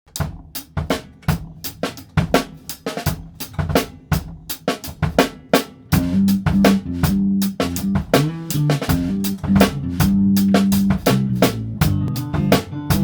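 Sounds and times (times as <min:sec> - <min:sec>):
drum kit playing groove: 0:00.0 - 0:13.0
sustained low band notes: 0:06.0 - 0:13.0.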